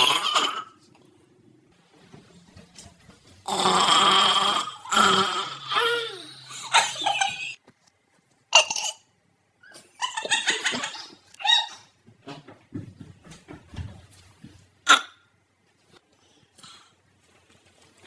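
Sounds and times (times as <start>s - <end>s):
high-pitched burp: 0.0s - 0.8s, 3.5s - 6.2s, 8.6s - 9.1s.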